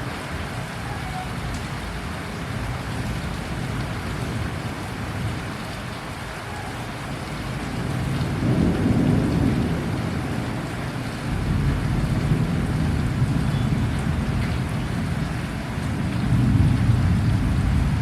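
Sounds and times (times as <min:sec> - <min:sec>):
heavy rain: 0:00.0 - 0:18.0
thunder rumbling: 0:06.6 - 0:18.0.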